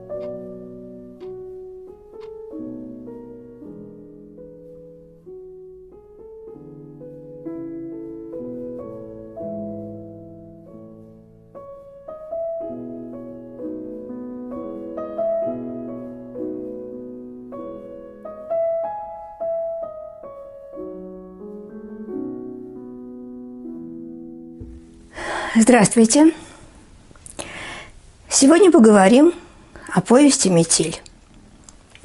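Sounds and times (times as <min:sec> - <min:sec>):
solo piano music: 0:00.0 - 0:25.2.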